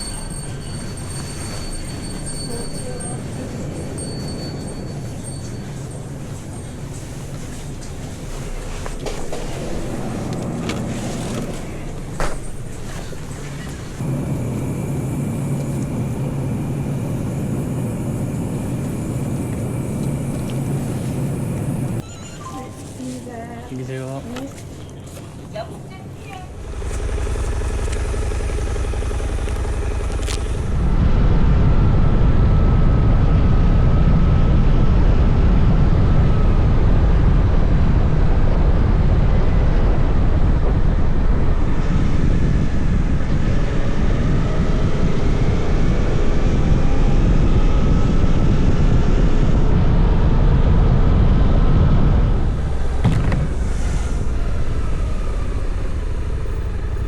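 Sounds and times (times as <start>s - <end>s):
motorcycle engine running: 26.5s - 32.3s
wind rumble on microphone: 26.6s - 57.0s.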